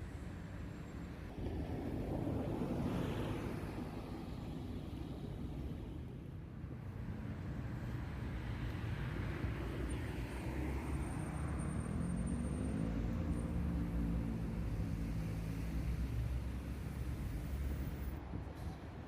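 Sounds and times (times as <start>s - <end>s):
vehicle road rumble and engine: 0.0s - 19.0s.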